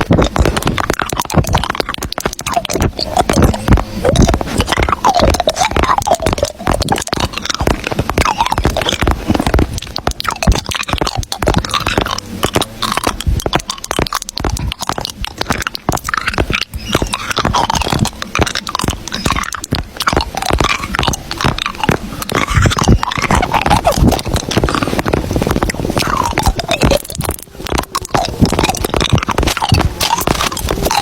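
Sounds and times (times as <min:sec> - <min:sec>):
close crunching and crackling: 0:00.0 - 0:31.0.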